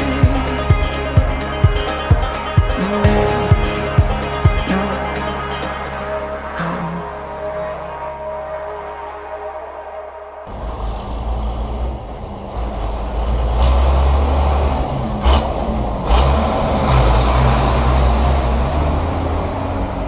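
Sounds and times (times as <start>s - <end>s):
tractor and baler rumbling: 0.0s - 7.8s, 10.5s - 20.0s.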